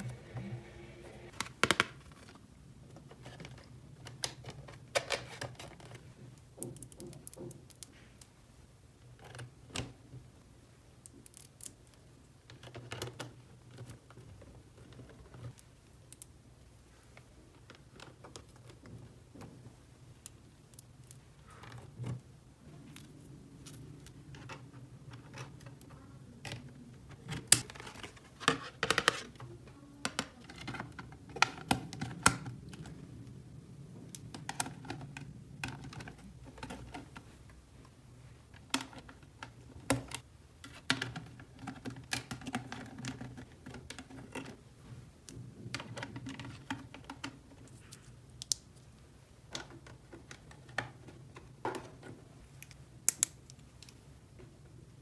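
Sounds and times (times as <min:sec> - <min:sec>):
faint low hum: 0:00.0 - 0:04.8, 0:13.7 - 0:40.2.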